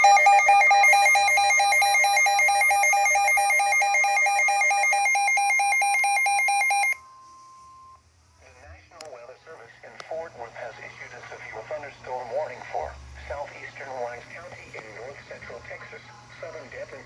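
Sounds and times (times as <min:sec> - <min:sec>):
faint steady tone: 0:00.0 - 0:08.6.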